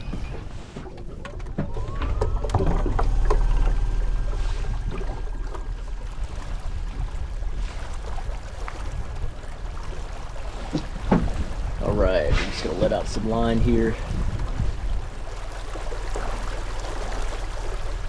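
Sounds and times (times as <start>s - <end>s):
wind and water rumble: 0.0s - 18.0s
electric motor whine: 1.7s - 8.6s.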